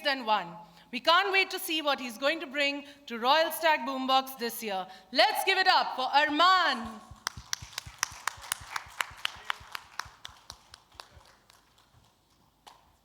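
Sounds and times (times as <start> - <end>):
audience hand claps: 6.8 - 13.0.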